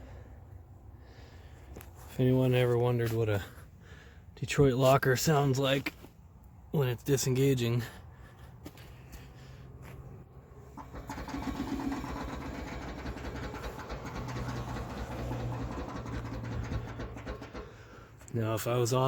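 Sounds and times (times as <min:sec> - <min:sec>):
rapid mechanical ratcheting clicks: 0:10.8 - 0:17.9.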